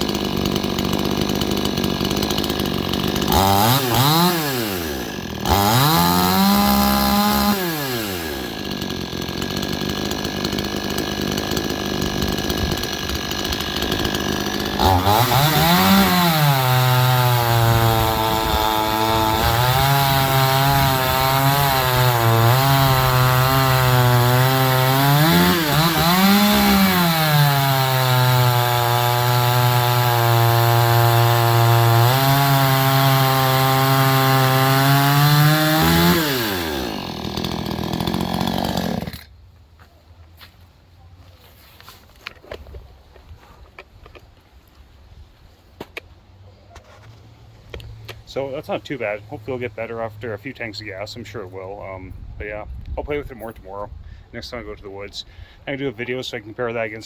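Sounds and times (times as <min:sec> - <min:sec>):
chainsaw revving: 0:00.0 - 0:39.3
chainsaw cutting through wood: 0:00.0 - 0:39.4.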